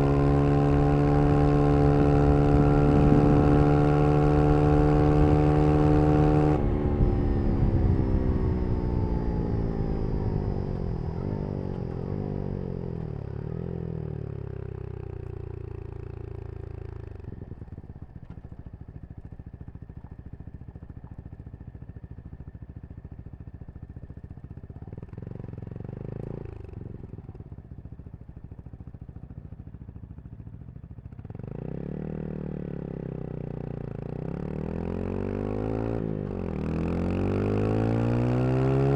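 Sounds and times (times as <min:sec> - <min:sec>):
motorcycle engine revving: 0:00.0 - 0:19.3, 0:31.2 - 0:38.9.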